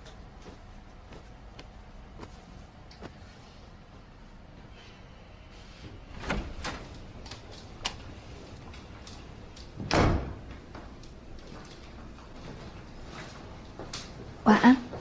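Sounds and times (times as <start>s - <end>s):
door clicks and knocks: 9.6s - 10.7s
door shutting with thud: 9.8s - 10.5s.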